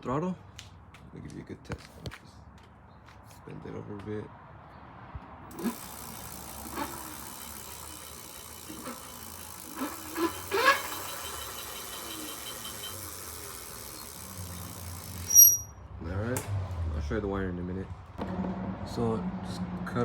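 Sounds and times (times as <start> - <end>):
electric motor whirring: 5.5 - 15.7.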